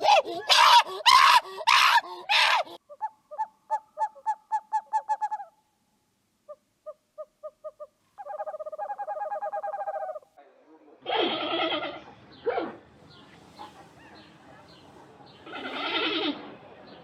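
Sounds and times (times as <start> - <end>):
bird calling: 6.5 - 10.3.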